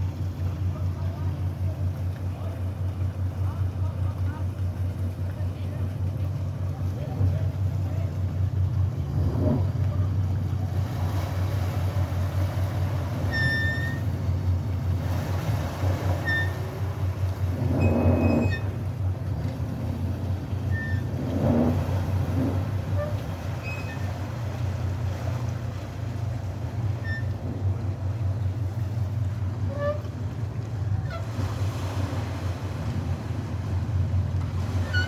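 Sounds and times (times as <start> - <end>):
boat diesel engines rumbling: 0.0 - 35.0.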